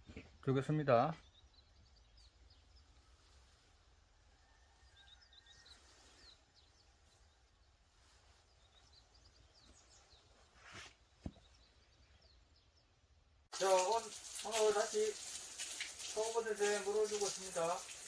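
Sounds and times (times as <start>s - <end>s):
faint bird chirps: 0.0s - 13.0s
short rustle: 5.5s - 11.5s.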